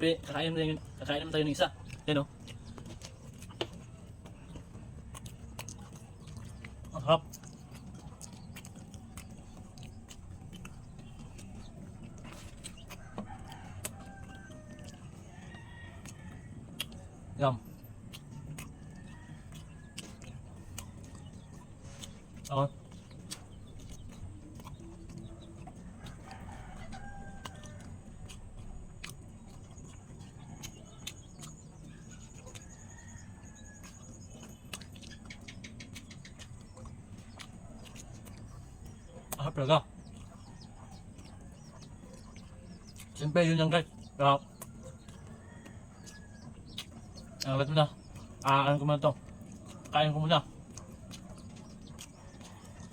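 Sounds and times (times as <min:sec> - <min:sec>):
chewing clicks: 0:00.0 - 0:52.9
chickens clucking: 0:00.0 - 0:52.9.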